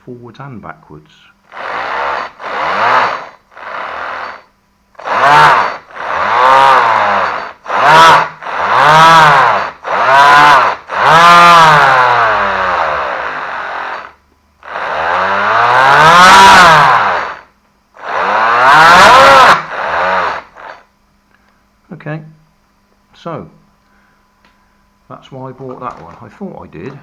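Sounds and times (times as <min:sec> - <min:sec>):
electric motor whine: 0:01.5 - 0:20.9.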